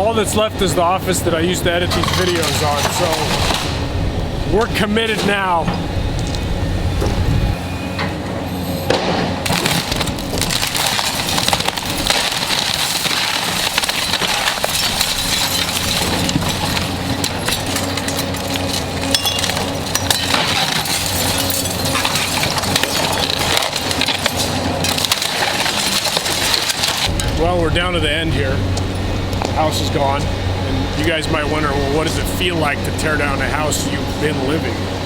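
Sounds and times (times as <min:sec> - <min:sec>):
diesel engine running: 0:00.0 - 0:35.0
debris splintering and breaking: 0:01.4 - 0:04.0, 0:08.9 - 0:34.7
glass breaking: 0:01.9 - 0:03.8, 0:08.9 - 0:27.3.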